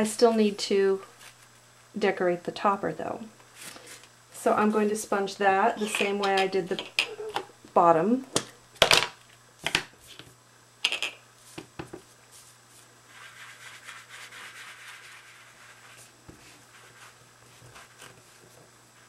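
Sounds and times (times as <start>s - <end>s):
sponge scuffing paper: 12.3s - 19.0s.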